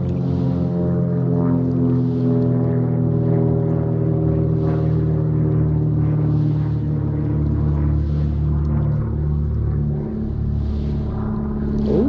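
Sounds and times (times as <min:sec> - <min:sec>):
engine running: 0:00.0 - 0:12.0.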